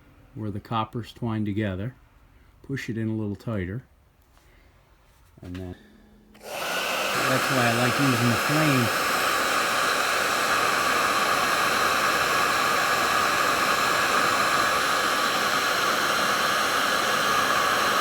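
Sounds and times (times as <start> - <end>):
heat gun blowing: 6.4 - 18.0.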